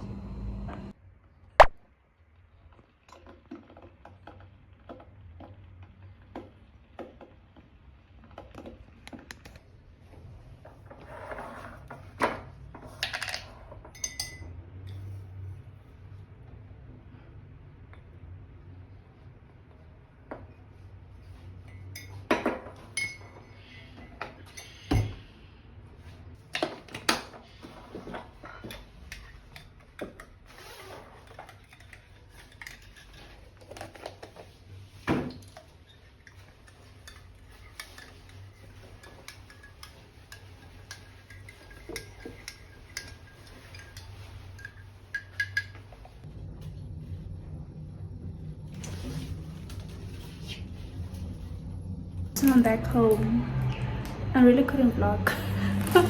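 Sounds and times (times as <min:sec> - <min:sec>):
dishes and cutlery clinking: 0:12.2 - 0:15.1, 0:21.6 - 0:25.1, 0:35.1 - 0:46.2.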